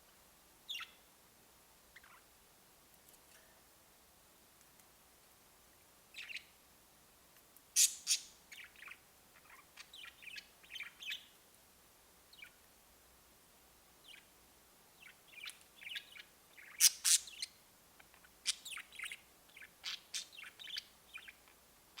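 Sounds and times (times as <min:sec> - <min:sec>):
budgerigars chirping and warbling: 0:00.7 - 0:01.0, 0:06.2 - 0:06.5, 0:07.8 - 0:11.3, 0:15.0 - 0:21.4
shrill bird calls: 0:07.8 - 0:11.3.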